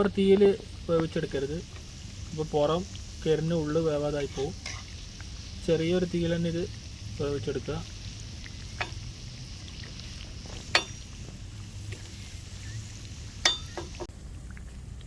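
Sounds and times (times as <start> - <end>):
food frying in hot oil: 0.0 - 15.0
utensil clinking on metal pan: 10.7 - 11.0, 13.4 - 14.0.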